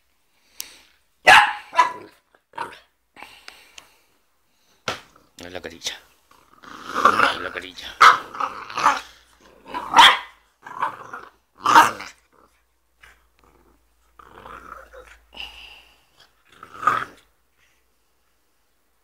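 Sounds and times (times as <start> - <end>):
puppy barking: 1.2 - 2.2, 8.0 - 9.1, 9.7 - 10.4
puppy growling: 6.3 - 17.8.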